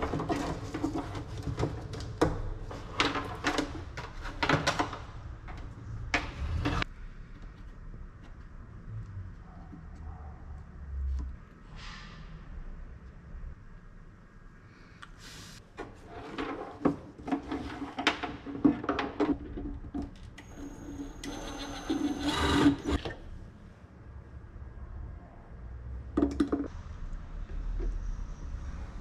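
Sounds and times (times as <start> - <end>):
small electric motor whirring: 21.2 - 23.0.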